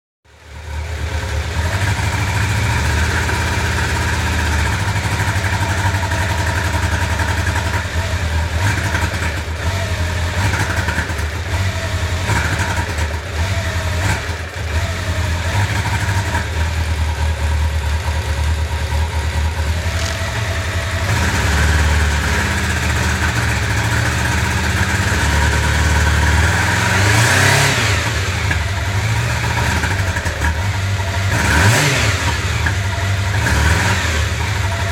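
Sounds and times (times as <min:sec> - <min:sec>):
motorcycle engine running unevenly: 0:00.3 - 0:34.9.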